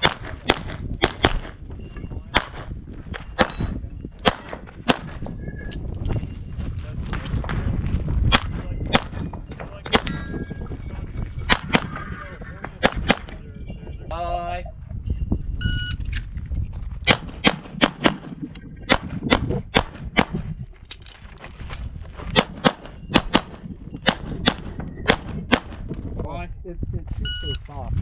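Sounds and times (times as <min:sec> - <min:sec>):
pistol shots: 0:00.0 - 0:01.6, 0:02.3 - 0:02.7, 0:03.4 - 0:05.2, 0:08.3 - 0:09.3, 0:11.5 - 0:12.0, 0:12.8 - 0:13.4, 0:17.1 - 0:20.4, 0:22.4 - 0:25.9.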